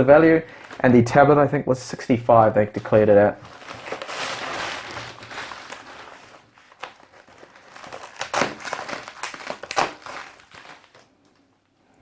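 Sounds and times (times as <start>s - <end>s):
packaging crinkling and rustling: 0.4s - 1.1s, 2.6s - 11.6s.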